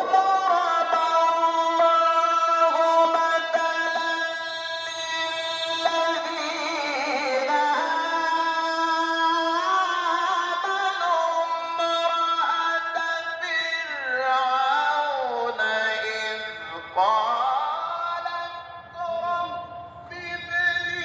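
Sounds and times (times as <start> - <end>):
man chanting recitation: 0.0 - 21.0.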